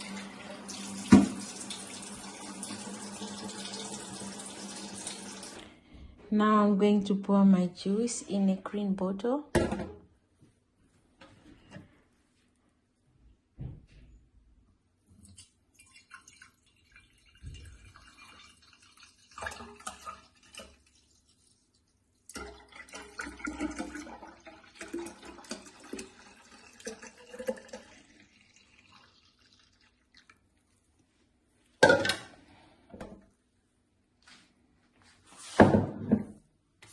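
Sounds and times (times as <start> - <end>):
juice pouring into a bottle: 15.4 - 30.9.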